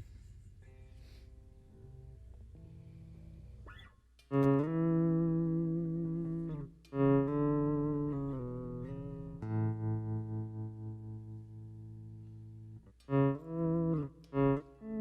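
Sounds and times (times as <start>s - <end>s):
electric bass sustained chords: 4.4s - 15.0s.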